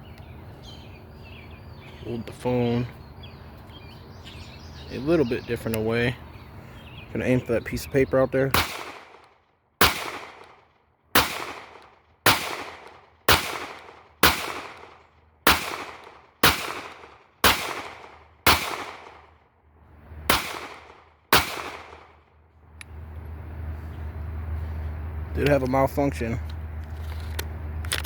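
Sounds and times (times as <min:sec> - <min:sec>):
pistol shots with echo: 0:08.5 - 0:19.4, 0:20.3 - 0:22.2.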